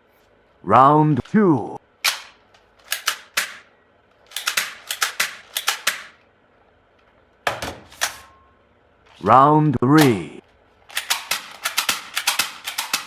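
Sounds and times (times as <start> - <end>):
toy gun snapping shots: 2.0 - 3.7, 4.3 - 6.2, 10.9 - 13.0.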